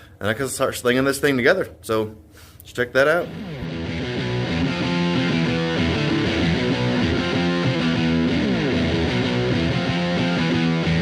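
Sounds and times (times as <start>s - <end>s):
distorted electric guitar rock music: 3.2s - 11.0s.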